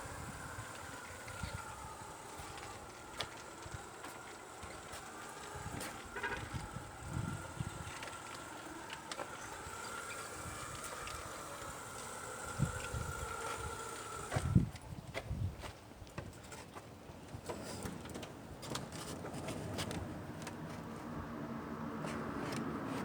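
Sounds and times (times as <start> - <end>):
small motor whining: 0.0 - 14.8.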